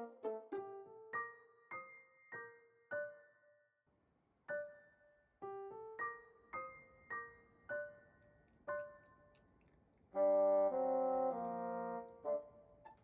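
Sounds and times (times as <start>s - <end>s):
gentle keyboard melody: 0.0s - 3.8s, 4.4s - 13.0s.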